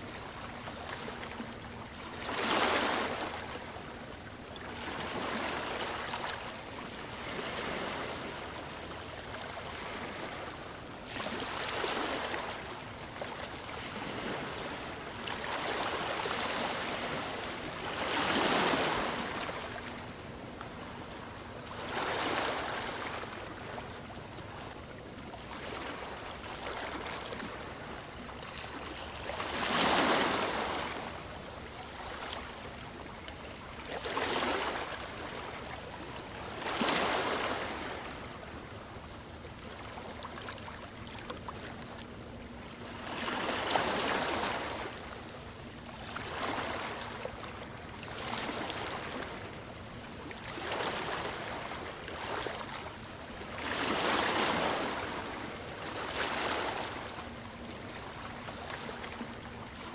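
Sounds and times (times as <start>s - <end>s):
ocean waves breaking: 25.5s - 32.5s.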